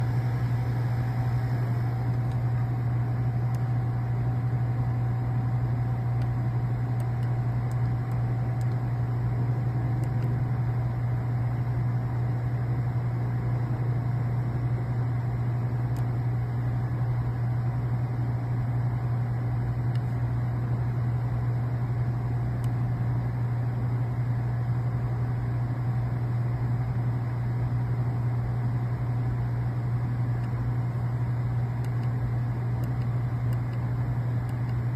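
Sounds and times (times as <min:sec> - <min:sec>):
refrigerator humming: 0:00.0 - 0:34.9.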